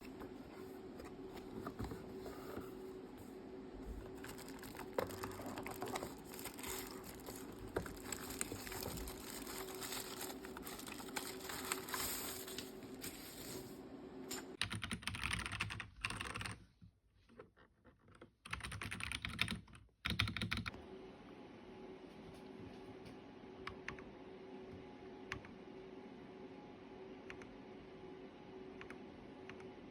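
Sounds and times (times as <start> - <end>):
computer keyboard typing: 14.6 - 16.6, 18.4 - 20.7.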